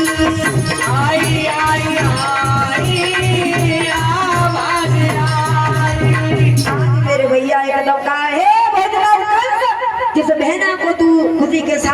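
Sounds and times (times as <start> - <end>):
steady drum beat: 0.0 - 7.5.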